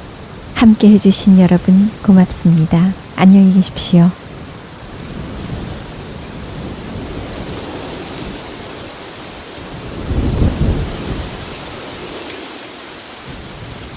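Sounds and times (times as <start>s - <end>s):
steady rain: 0.0s - 0.6s, 4.2s - 13.9s.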